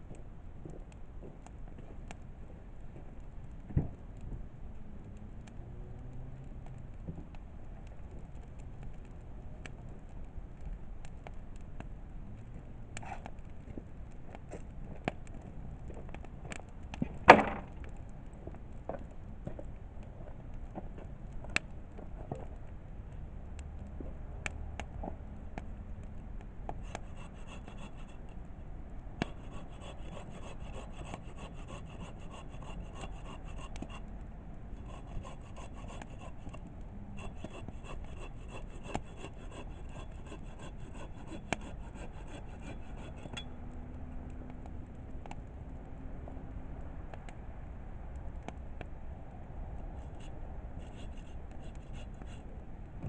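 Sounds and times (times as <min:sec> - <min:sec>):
campfire crackling and popping: 0:00.1 - 0:53.0
high pulsing rasp: 0:26.8 - 0:28.3, 0:29.2 - 0:34.0, 0:34.8 - 0:36.6, 0:37.2 - 0:43.5, 0:50.0 - 0:52.4.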